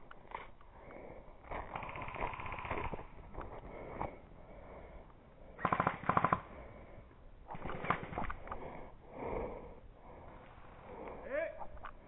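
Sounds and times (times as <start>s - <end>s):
airsoft gun firing bursts: 1.7s - 3.0s, 5.6s - 6.5s.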